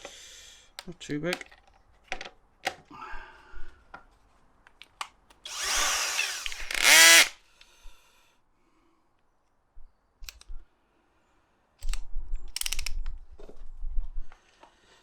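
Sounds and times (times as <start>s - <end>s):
light clicks and handling knocks: 0.8s - 2.8s
power drill drilling: 5.5s - 7.4s.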